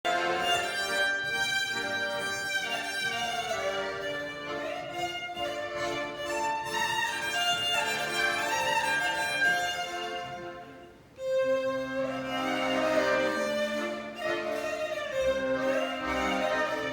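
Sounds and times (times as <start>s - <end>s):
band held notes: 0.1s - 16.9s
fiddle melody: 0.1s - 16.9s.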